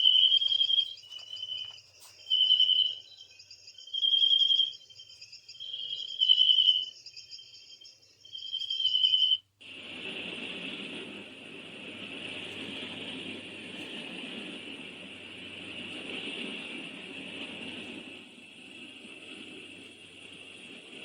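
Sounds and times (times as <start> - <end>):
steady rushing hiss: 0.0 - 3.9, 9.6 - 21.0
recorded cricket chirping: 0.0 - 21.0.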